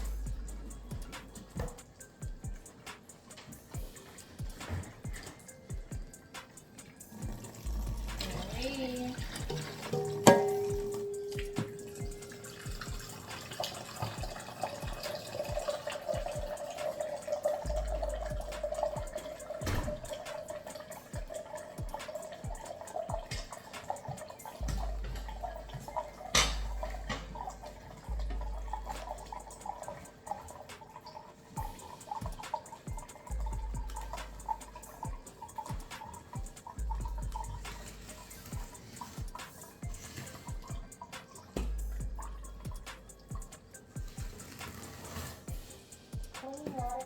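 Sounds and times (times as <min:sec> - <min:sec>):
water running from tap into cup: 0:00.0 - 0:47.0.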